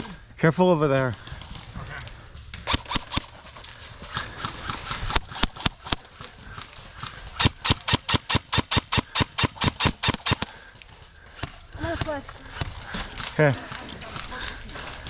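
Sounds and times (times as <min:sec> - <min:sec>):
airsoft guns firing: 0:02.6 - 0:14.6.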